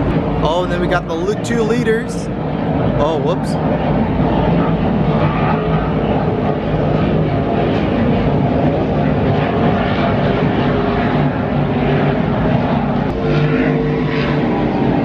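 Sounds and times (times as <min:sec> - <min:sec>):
higher engine tone: 0:00.0 - 0:05.0
powerboat engines droning: 0:00.0 - 0:15.0.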